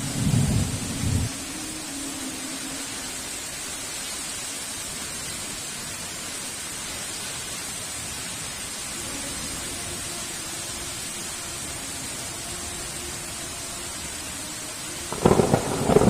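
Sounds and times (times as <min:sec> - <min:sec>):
heavy rain falling: 0:00.0 - 0:16.0.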